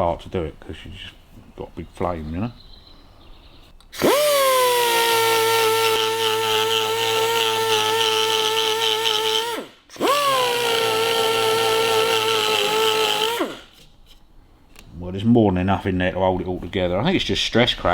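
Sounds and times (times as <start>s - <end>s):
power tool motor whining: 4.0s - 13.8s.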